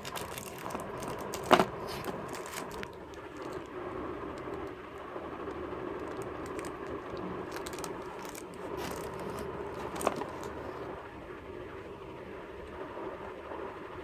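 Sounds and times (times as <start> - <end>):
packaging rustling: 0.0 - 10.9
steady background hum: 0.0 - 14.0.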